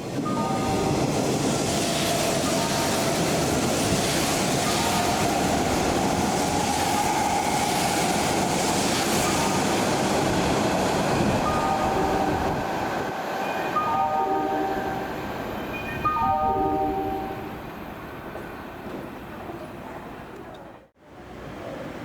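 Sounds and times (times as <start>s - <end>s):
train wheels rumbling on rail: 0.0s - 16.1s.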